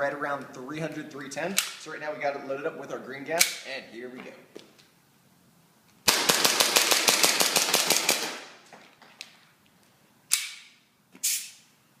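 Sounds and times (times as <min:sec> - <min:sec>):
airsoft pistol shots: 0:06.1 - 0:08.5.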